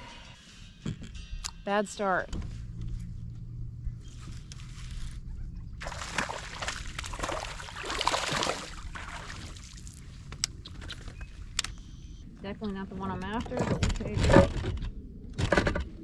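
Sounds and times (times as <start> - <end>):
water splashing and sloshing: 5.8 - 11.2.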